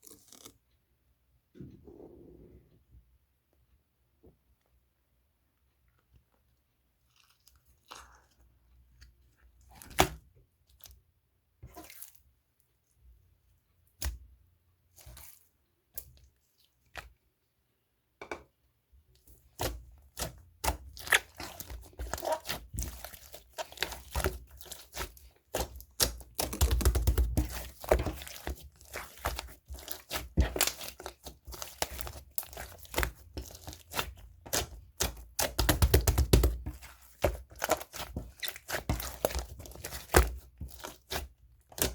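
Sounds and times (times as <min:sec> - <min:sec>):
slime crackling and tearing: 0:19.5 - 0:41.9.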